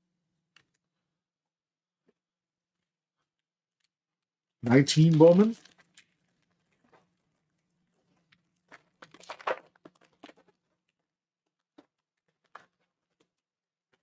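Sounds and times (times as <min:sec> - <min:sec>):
wrapper crinkling and tearing: 0:09.0 - 0:10.5.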